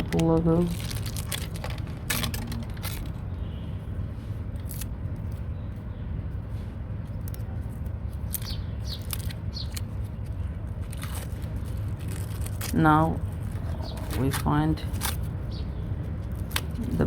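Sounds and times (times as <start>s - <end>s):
metal foil tearing and peeling: 0.0s - 3.2s, 10.6s - 15.3s.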